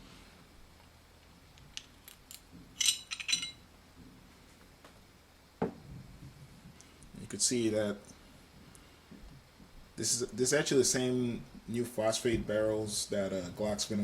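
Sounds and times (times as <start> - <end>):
metallic clinks: 2.3 - 3.6.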